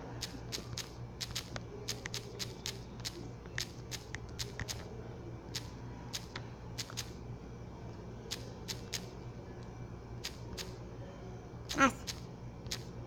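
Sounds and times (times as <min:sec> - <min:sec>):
steady low hum: 0:00.0 - 0:13.0
irregular clicks: 0:00.2 - 0:04.9, 0:05.5 - 0:07.2, 0:08.3 - 0:10.8, 0:11.7 - 0:12.9.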